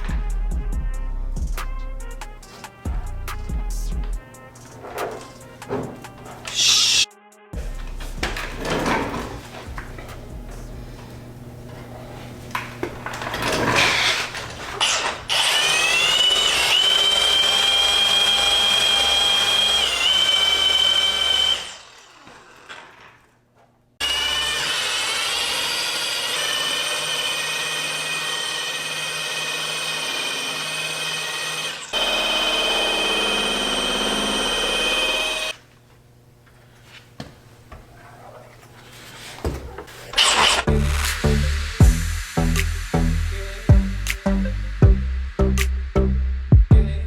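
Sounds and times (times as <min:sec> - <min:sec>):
car buffer motor whine: 0:31.9 - 0:35.6.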